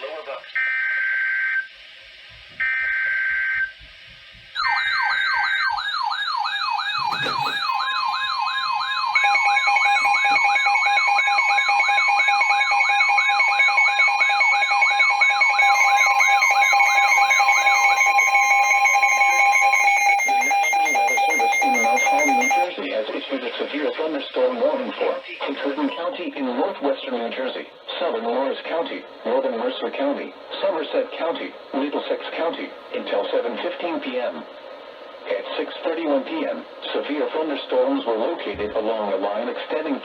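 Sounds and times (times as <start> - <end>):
steady alarm tones: 2.6 - 22.7
fast-warbling siren tone: 4.6 - 22.6.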